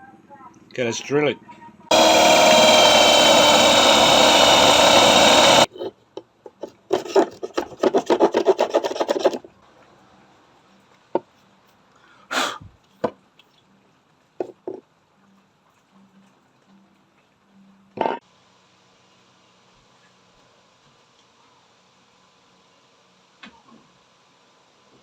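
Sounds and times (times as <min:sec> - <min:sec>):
electric drill whining: 0:01.9 - 0:05.7
fast rhythmic scraping: 0:07.0 - 0:09.4.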